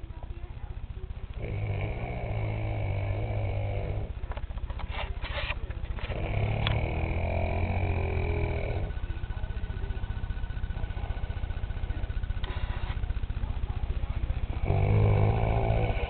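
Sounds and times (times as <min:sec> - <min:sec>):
man snoring loudly: 0:01.4 - 0:04.1, 0:06.1 - 0:09.0, 0:14.5 - 0:16.0.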